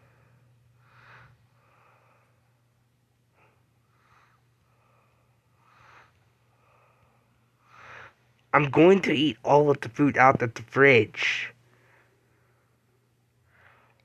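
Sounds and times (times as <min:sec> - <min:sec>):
faint steady hum: 0:00.0 - 0:14.0
soft breathy puffs: 0:03.3 - 0:08.4.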